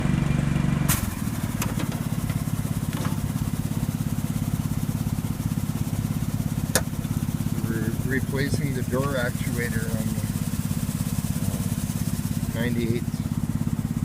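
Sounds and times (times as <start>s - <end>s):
engine idling: 0.0s - 14.0s.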